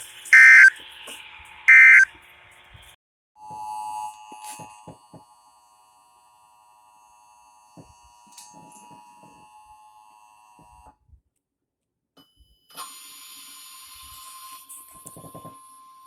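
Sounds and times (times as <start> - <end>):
faint electronic tones: 0.4 - 0.8, 1.7 - 2.1
short burst: 0.4 - 0.8, 1.7 - 2.1
steady alert tone: 0.4 - 0.8, 1.7 - 2.1.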